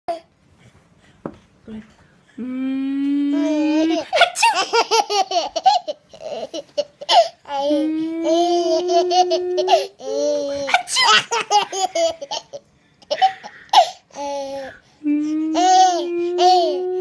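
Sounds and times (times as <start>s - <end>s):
drawn-out held voice tones: 2.4s - 4.1s, 7.6s - 9.9s, 15.0s - 17.0s
baby girl laughing: 3.3s - 14.6s.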